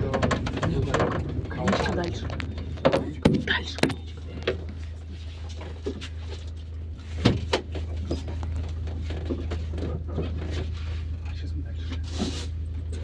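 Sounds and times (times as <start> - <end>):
sharp knocks or rattles: 0.0 - 4.0
low engine drone: 0.0 - 13.0.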